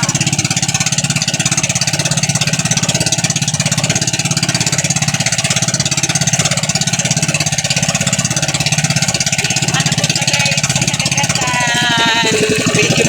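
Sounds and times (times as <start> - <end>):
boat engine chugging: 0.0 - 13.0.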